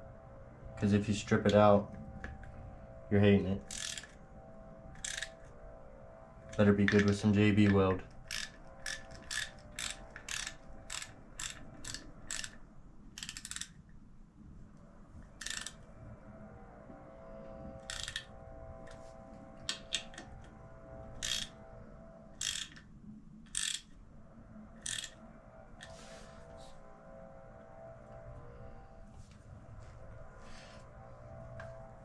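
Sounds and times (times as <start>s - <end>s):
socket ratchet clicking: 3.7s - 4.2s, 5.0s - 5.4s, 8.3s - 12.6s, 13.2s - 13.8s, 15.4s - 15.8s, 17.8s - 18.3s, 21.2s - 21.6s, 22.4s - 22.9s, 23.5s - 24.0s, 24.8s - 25.2s.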